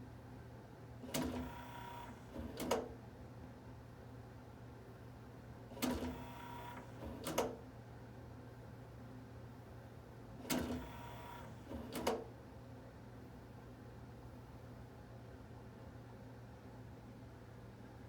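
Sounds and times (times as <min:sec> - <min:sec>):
cd changer mechanism whirring: 0:01.1 - 0:02.7, 0:05.8 - 0:07.6, 0:10.4 - 0:12.2.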